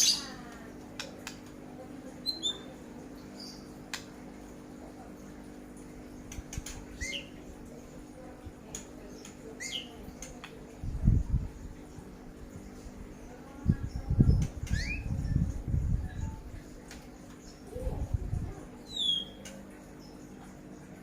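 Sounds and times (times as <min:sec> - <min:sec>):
bird chirping: 0:18.8 - 0:20.4.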